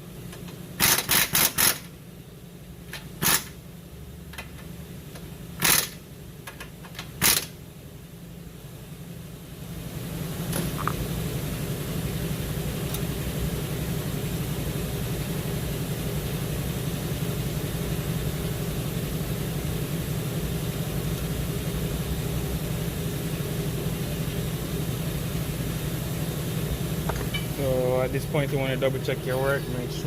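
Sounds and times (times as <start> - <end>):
low mechanical hum: 0.0 - 30.0.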